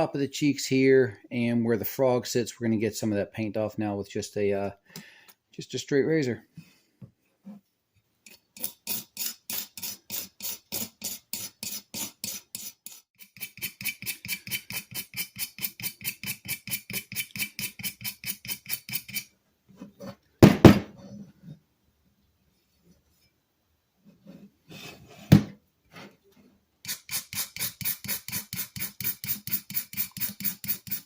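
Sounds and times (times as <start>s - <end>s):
razor scraping paint off metal: 8.6s - 19.3s, 26.9s - 31.0s.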